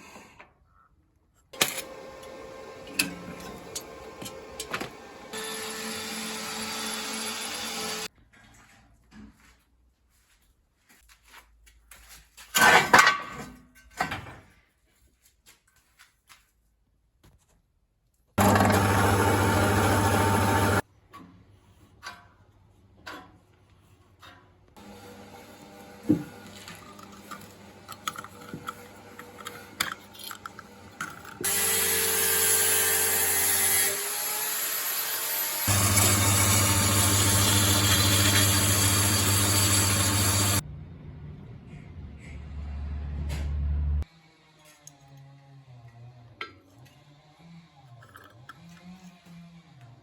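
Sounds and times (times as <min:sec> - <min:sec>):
diesel generator running: 0:35.7 - 0:41.0.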